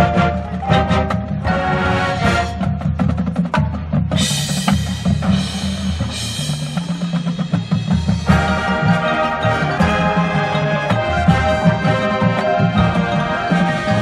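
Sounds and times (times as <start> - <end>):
drumline: 0.0 - 14.0
marching band playing: 0.0 - 14.0.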